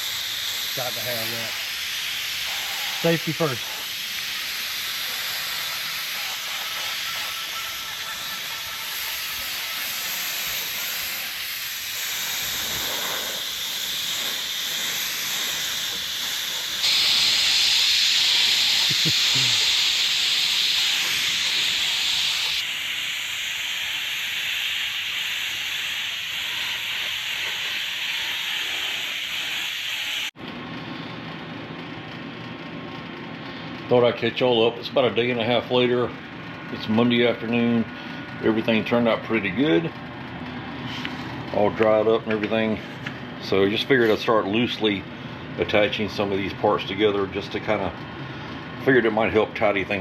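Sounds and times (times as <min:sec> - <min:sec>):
paint spray hissing: 0:00.0 - 0:30.4.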